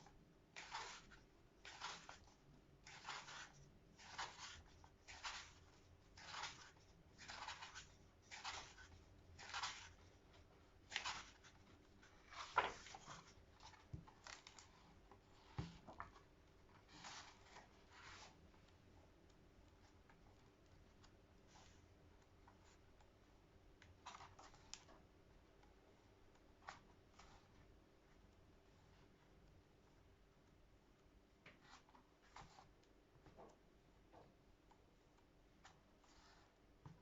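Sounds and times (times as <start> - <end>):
book pages turning: 0.6 - 18.8, 23.8 - 25.0.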